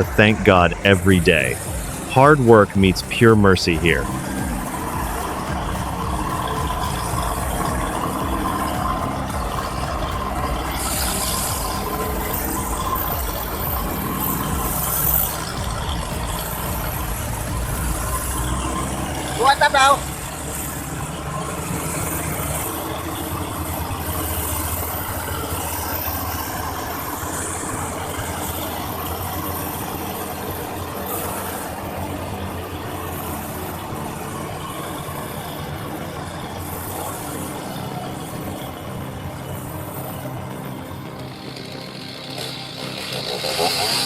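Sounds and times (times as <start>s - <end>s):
engine running: 0.0s - 44.0s.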